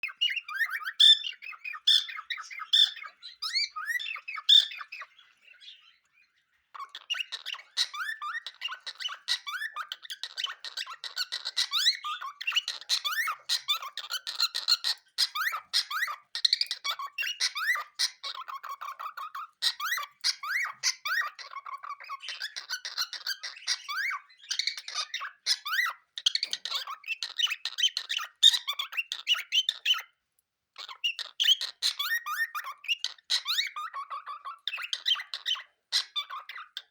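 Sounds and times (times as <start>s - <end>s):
cockatiels chirping: 0.0s - 30.2s, 30.8s - 36.9s.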